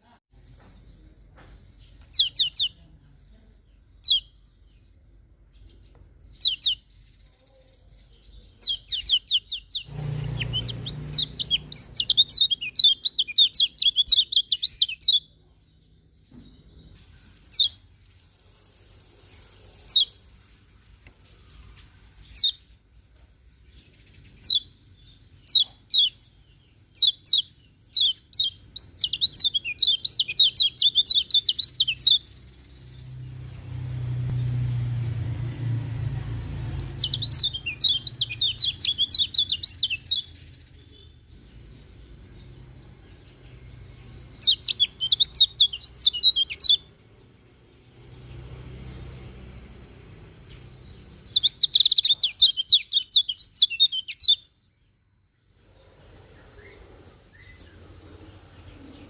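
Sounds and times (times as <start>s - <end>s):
bird chirping: 0.0s - 17.9s, 19.1s - 22.8s, 23.5s - 59.0s
low rumble: 32.8s - 37.6s.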